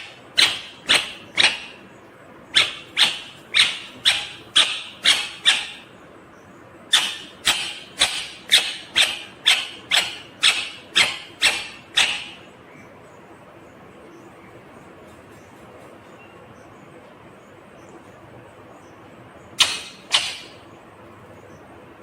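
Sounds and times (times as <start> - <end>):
parrot shrieking: 0.0 - 1.8, 2.5 - 5.9, 6.9 - 12.5, 19.6 - 20.6.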